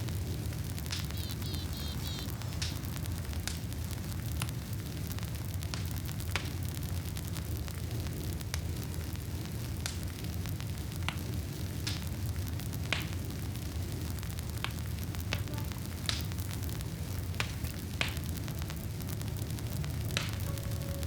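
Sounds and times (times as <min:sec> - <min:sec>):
campfire crackling and popping: 0:00.0 - 0:21.0
steady low rumble: 0:12.1 - 0:21.0.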